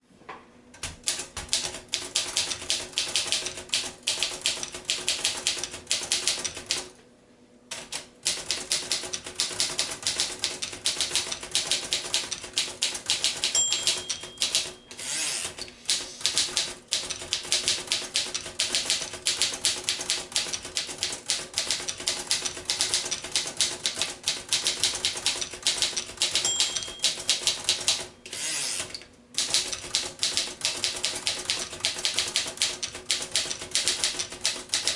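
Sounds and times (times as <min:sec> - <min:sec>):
typewriter key strikes: 0:07.7 - 0:14.8, 0:15.9 - 0:28.1, 0:29.4 - 0:34.9
typewriter bell ringing: 0:13.4 - 0:15.1, 0:26.2 - 0:27.9.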